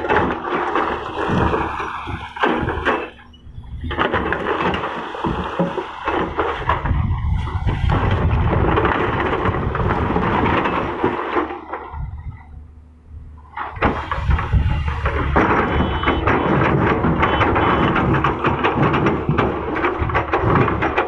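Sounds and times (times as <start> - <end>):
bucket scraping and knocking: 0.0 - 12.5
excavator engine rumble: 0.0 - 21.0.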